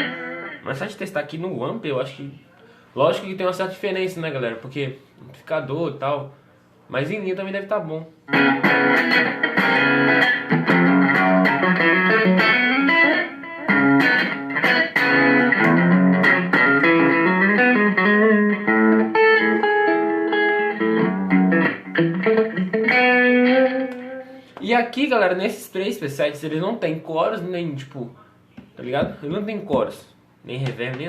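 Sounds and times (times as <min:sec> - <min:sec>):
electric guitar notes and chords: 0:00.0 - 0:00.7, 0:08.3 - 0:24.6.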